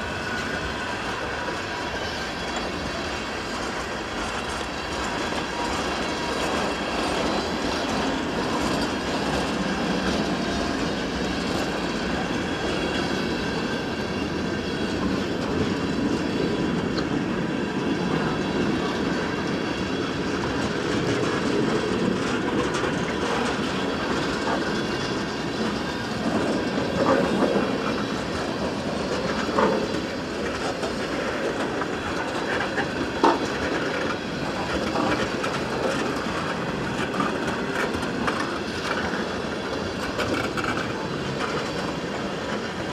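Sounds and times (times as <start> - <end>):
train wheels clattering on rails: 0.0 - 42.9.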